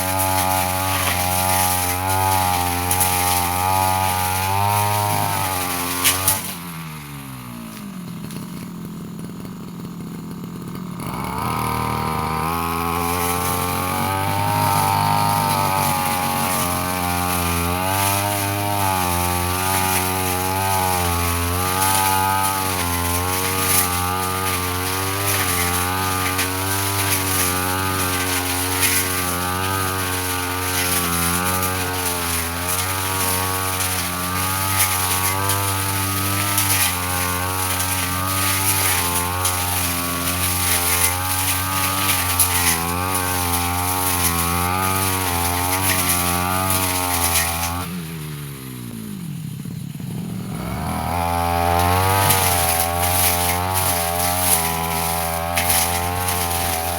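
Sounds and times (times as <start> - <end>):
brush cutter engine cutting grass: 0.0 - 56.9.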